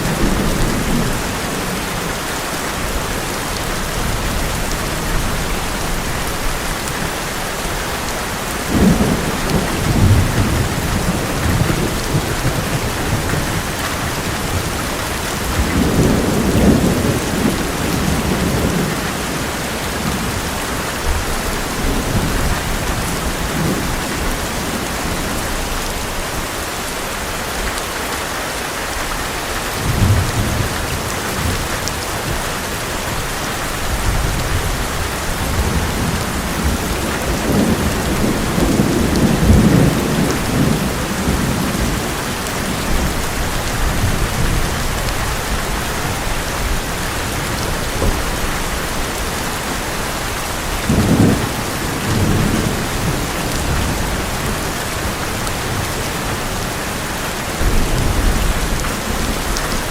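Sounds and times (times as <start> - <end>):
rain on a metal roof: 0.0 - 59.9
thunder rolling: 8.6 - 25.5, 33.0 - 56.0, 57.6 - 59.9.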